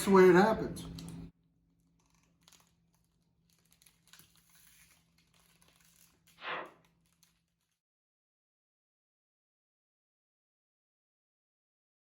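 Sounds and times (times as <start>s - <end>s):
kitchen crinkling and clicks: 0.0s - 7.8s
loud scrape or knock: 6.4s - 6.7s.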